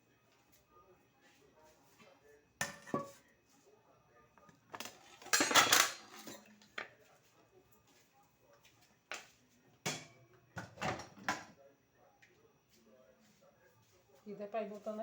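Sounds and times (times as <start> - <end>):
dishes and containers clattering: 2.6 - 3.2, 4.6 - 6.9, 9.9 - 11.5.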